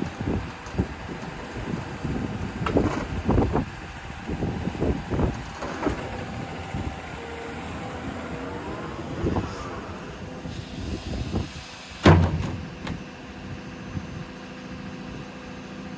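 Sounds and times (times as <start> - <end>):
excavator running: 0.0 - 15.9
machine knocks and clunks: 5.2 - 6.4, 12.0 - 13.0
brief machine whine: 6.0 - 12.2.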